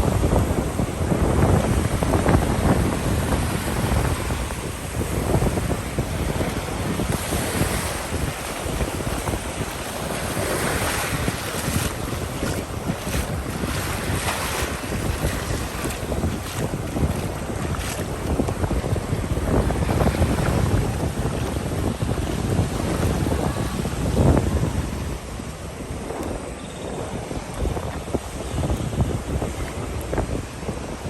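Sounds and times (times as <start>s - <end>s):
ocean surf breaking: 0.0s - 26.6s
wind buffeting microphone: 0.0s - 31.0s.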